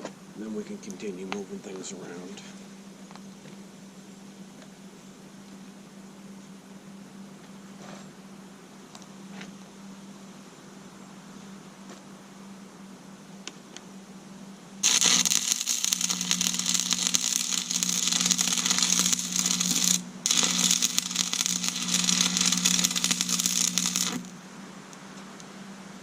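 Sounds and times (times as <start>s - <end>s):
steady low hum: 0.0s - 26.0s
welding arc crackling: 14.8s - 24.4s.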